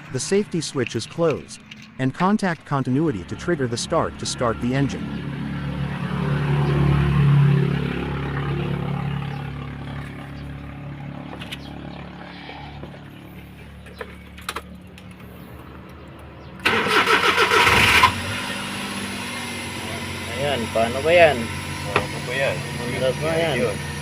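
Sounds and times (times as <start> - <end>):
low engine hum: 0.0 - 24.0
engine starting: 16.6 - 18.9.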